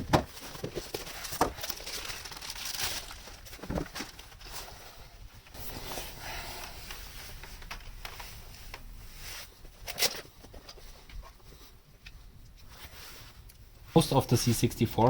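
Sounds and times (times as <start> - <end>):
rustling handling noise: 0.0 - 15.0.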